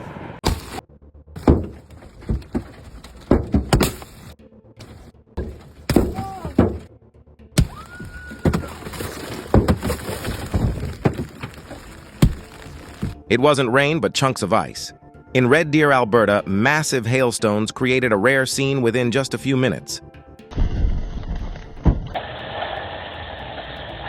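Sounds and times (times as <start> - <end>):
hailstones striking hard surfaces: 7.6 - 13.2.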